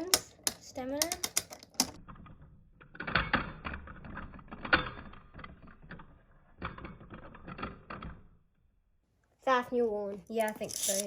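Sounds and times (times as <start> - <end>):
spinning tops clicking and knocking: 0.0 - 8.4, 10.4 - 11.0.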